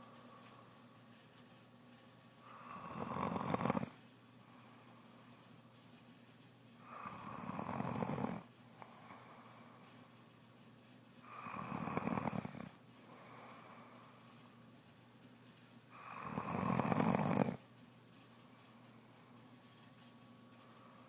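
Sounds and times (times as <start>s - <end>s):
quiet breaths: 0.0s - 21.0s
woman snoring: 2.5s - 4.0s, 6.9s - 8.4s, 11.3s - 12.8s, 16.0s - 17.6s.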